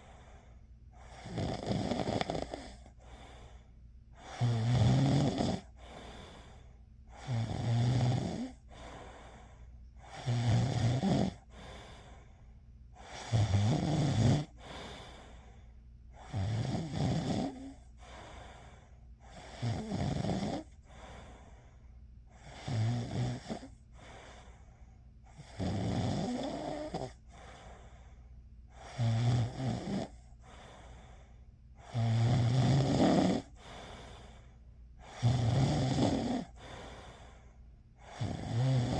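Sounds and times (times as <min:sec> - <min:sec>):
soft breathing: 0:00.0 - 0:01.3, 0:02.3 - 0:04.5, 0:05.6 - 0:07.3, 0:08.3 - 0:10.3, 0:11.3 - 0:13.4, 0:14.4 - 0:16.3, 0:17.5 - 0:19.5, 0:20.6 - 0:22.6, 0:23.6 - 0:25.5, 0:26.6 - 0:29.0, 0:30.0 - 0:32.0, 0:33.3 - 0:35.2, 0:36.1 - 0:38.4
person snoring: 0:01.0 - 0:03.4, 0:04.2 - 0:06.4, 0:07.1 - 0:09.4, 0:10.0 - 0:12.0, 0:13.0 - 0:15.3, 0:16.2 - 0:18.1, 0:18.7 - 0:21.0, 0:22.4 - 0:24.5, 0:25.3 - 0:27.2, 0:28.7 - 0:30.6, 0:31.8 - 0:34.4, 0:35.0 - 0:37.4, 0:38.0 - 0:38.9.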